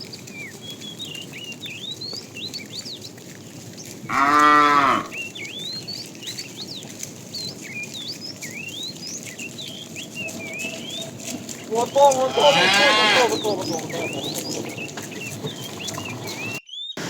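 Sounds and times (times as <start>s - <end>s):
birds chirping and whistling: 0.0s - 17.0s
cow mooing: 4.1s - 5.2s, 10.8s - 16.6s.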